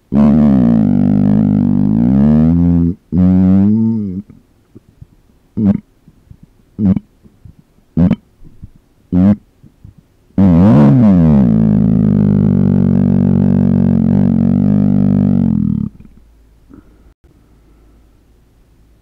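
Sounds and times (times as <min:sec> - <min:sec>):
closed-mouth burps: 0:05.6 - 0:07.1, 0:08.0 - 0:08.2, 0:09.1 - 0:16.9.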